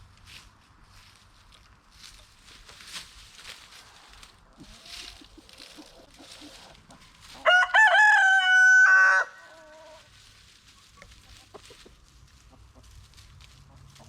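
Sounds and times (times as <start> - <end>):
rooster crowing: 7.4 - 10.1.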